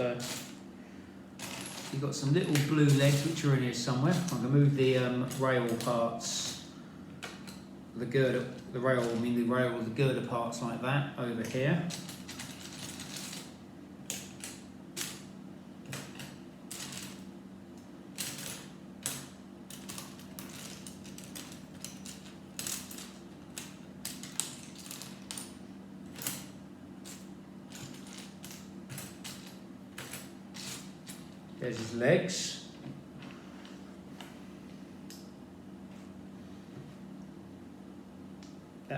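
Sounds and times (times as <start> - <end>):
steady low hum: 0.0 - 38.9
plastic pieces clicking and rattling: 18.2 - 25.5.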